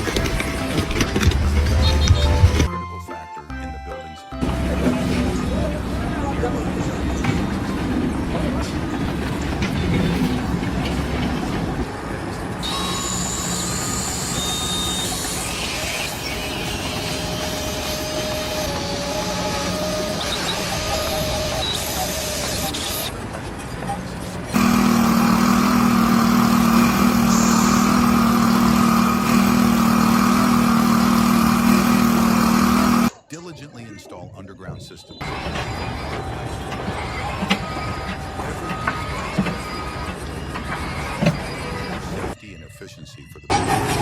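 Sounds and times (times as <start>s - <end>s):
heavy machinery rumbling: 4.4s - 33.1s
engine droning: 24.3s - 33.1s
high-pitched whines: 24.6s - 33.1s.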